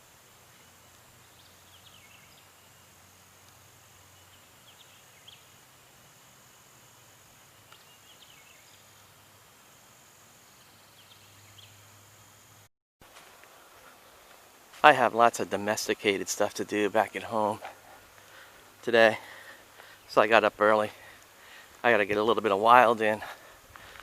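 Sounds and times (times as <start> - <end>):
high insect drone: 0.0 - 24.0
bird chirping: 0.5 - 2.8, 4.1 - 5.6, 7.6 - 9.0, 10.4 - 11.9.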